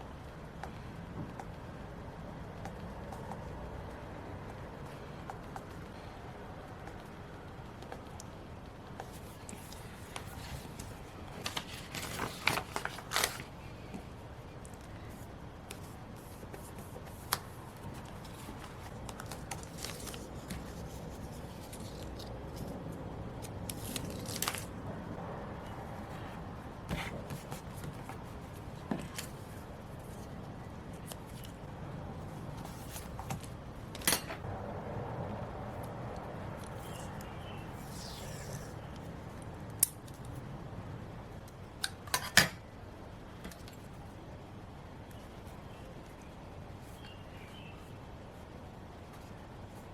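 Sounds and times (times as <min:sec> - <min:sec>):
paper and stickers handled: 0:09.0 - 0:24.8, 0:26.0 - 0:33.6.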